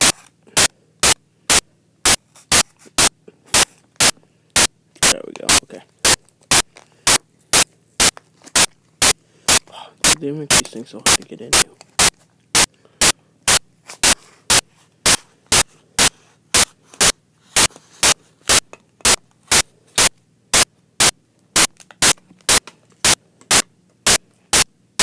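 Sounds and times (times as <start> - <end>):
static clicks: 0.0 - 24.7
speech: 5.0 - 6.0, 10.1 - 11.8.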